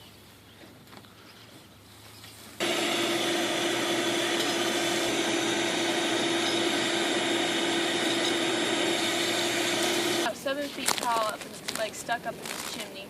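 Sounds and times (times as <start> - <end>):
motor whirring with whine: 2.6 - 10.3.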